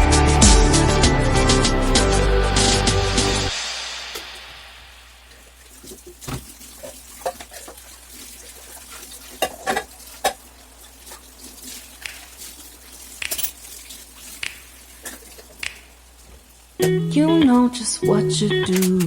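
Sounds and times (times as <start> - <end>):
household items clinking: 5.3 - 15.9.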